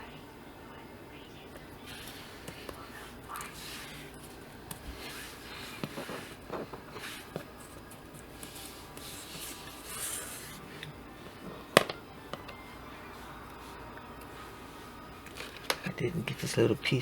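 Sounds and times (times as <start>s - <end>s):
paper rustling and scratching: 1.8s - 11.5s.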